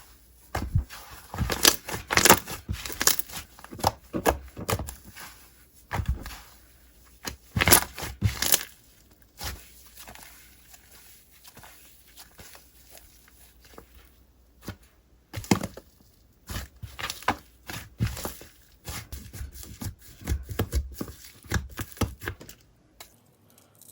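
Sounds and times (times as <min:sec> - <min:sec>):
slime squeezed crackling: 0:07.2 - 0:13.7.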